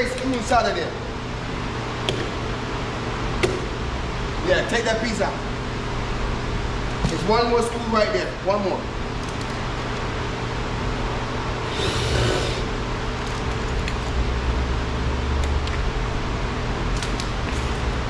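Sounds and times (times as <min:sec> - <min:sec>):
mechanical hum: 0:00.0 - 0:18.0.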